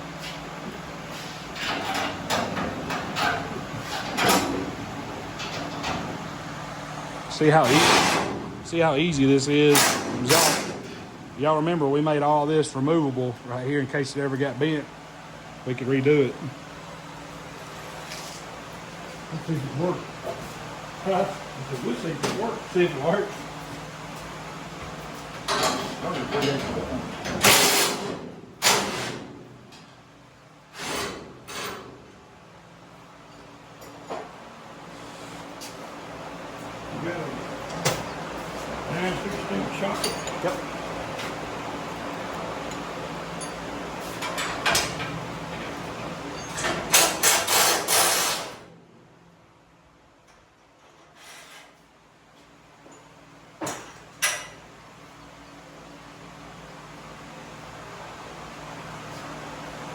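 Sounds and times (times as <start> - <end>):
steady low hum: 0.0 - 50.6
metal tools clanking: 39.1 - 40.7, 46.1 - 47.6.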